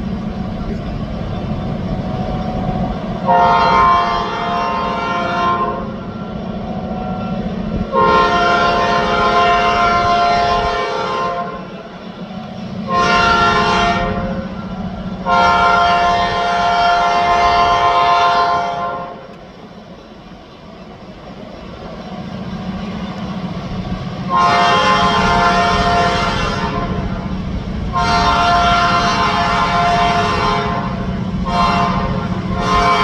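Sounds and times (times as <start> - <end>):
diesel engine rumbling: 0.0 - 33.0
locomotive air horn blasts: 2.2 - 6.1, 6.8 - 11.9, 12.8 - 19.3, 24.2 - 27.3, 27.9 - 33.0.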